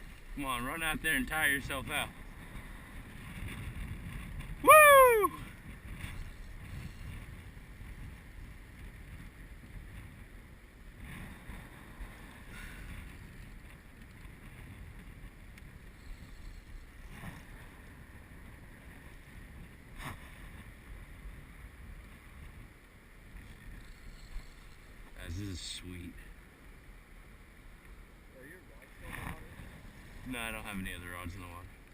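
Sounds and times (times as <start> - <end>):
wind buffeting microphone: 0.0 - 25.4.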